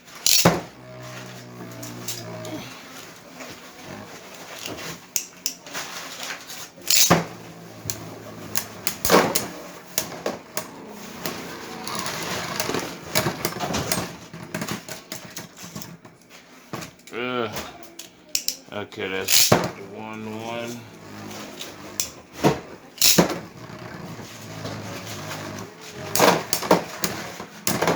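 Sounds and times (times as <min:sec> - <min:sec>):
spinning tops clashing: 0:00.1 - 0:00.7, 0:06.8 - 0:07.4, 0:19.3 - 0:19.6, 0:23.0 - 0:23.2.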